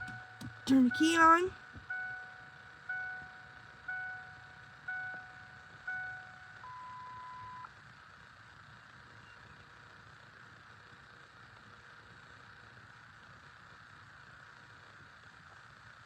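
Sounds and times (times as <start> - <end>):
dashboard chime ringing: 0.0 - 3.2.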